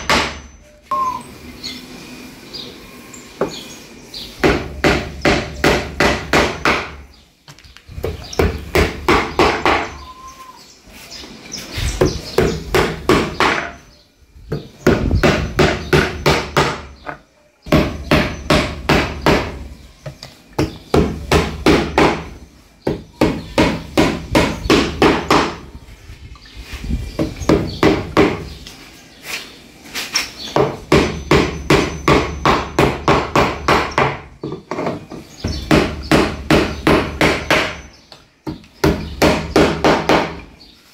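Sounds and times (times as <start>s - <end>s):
steady hammering knocks: 0.0s - 0.5s, 4.4s - 7.1s, 8.0s - 10.0s, 12.0s - 13.8s, 14.5s - 25.7s, 27.2s - 28.5s, 30.5s - 40.5s.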